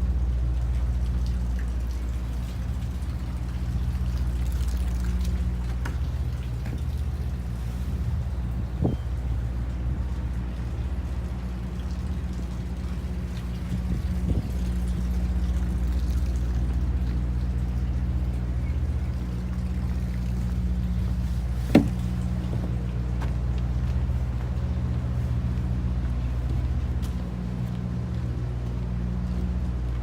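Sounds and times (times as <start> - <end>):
boat engine humming: 0.0 - 30.0
sharp knock: 21.7 - 22.0.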